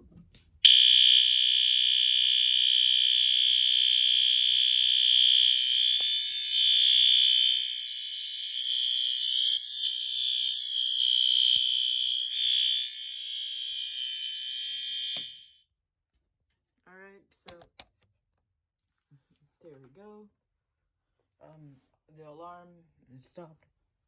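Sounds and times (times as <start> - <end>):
high-pitched electronic alarm horn: 0.6 - 15.5.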